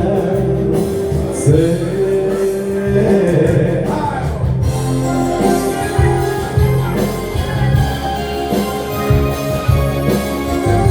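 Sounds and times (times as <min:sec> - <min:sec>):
man singing: 0:00.0 - 0:07.1
live band playing: 0:00.0 - 0:10.9.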